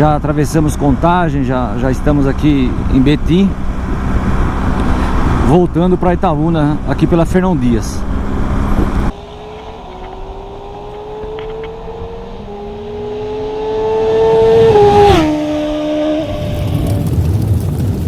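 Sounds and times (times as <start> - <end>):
road noise: 0.0 - 18.0
vehicle engine: 0.0 - 18.0
wind noise rush: 8.1 - 12.4, 14.1 - 18.0.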